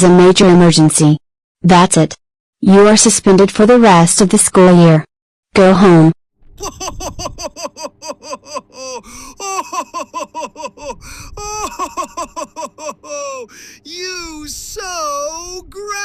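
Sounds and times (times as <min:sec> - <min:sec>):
cartoon voice laughing: 0:06.6 - 0:16.0.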